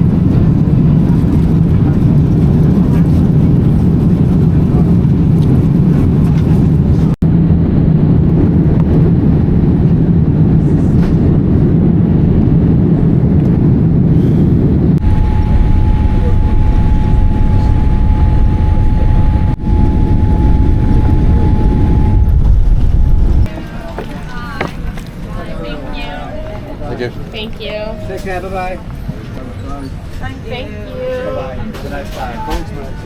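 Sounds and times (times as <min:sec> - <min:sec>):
jet airliner cabin rumble: 0:00.0 - 0:25.8
thin steady tone: 0:15.0 - 0:22.4.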